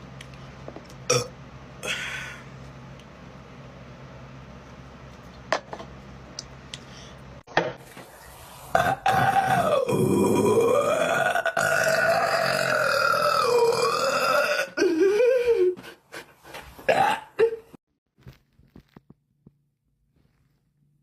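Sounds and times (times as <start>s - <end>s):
woman burping: 8.8s - 15.0s, 16.9s - 17.8s.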